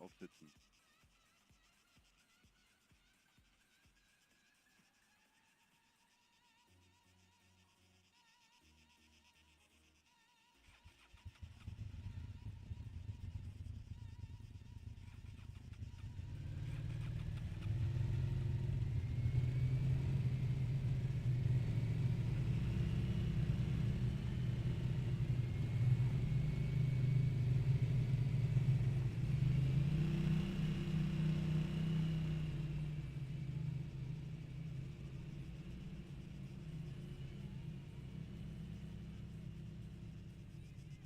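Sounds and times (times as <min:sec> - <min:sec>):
faint motor whine: 0:00.0 - 0:41.0
engine rumble: 0:11.2 - 0:41.0.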